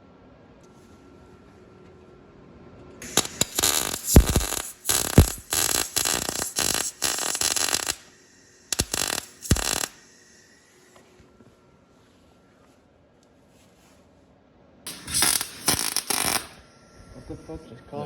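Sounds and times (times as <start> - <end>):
welder arc crackling: 3.0 - 10.2, 14.9 - 16.6.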